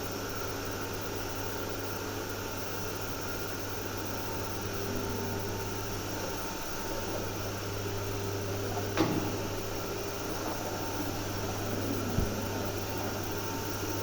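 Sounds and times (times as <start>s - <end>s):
machine electric hum and whir: 0.0s - 14.0s
sharp click: 9.0s - 9.6s.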